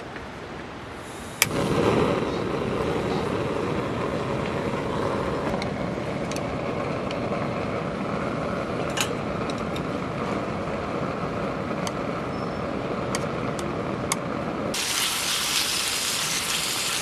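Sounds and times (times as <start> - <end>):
heavy rain: 0.8 - 17.0
campfire crackling and popping: 1.4 - 12.2, 14.7 - 17.0.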